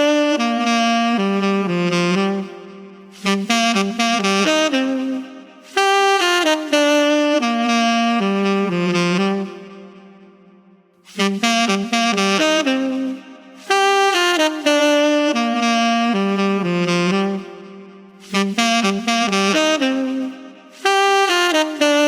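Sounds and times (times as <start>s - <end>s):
saxophone melody: 0.0s - 22.0s.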